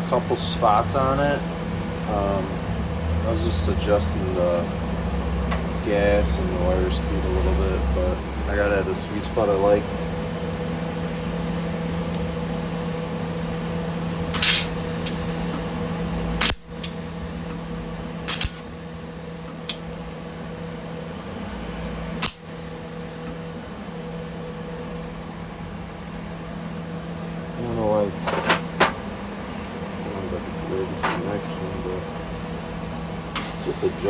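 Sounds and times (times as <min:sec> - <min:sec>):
welder humming: 0:00.0 - 0:34.0
sharp clicks: 0:18.3 - 0:18.7, 0:22.2 - 0:22.5.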